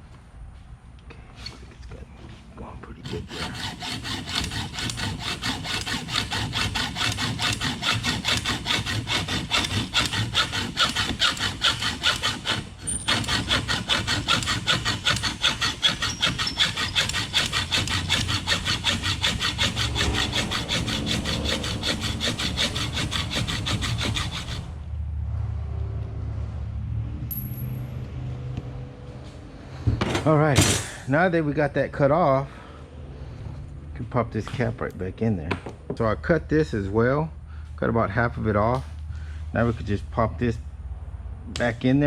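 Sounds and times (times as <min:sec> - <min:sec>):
hacksaw cutting: 0:03.0 - 0:24.8.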